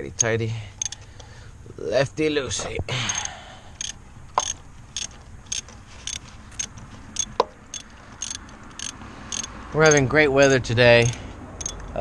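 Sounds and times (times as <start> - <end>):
ratchet wrench clicking: 0.0 - 1.3, 3.0 - 12.0
metallic ring: 3.0 - 12.0.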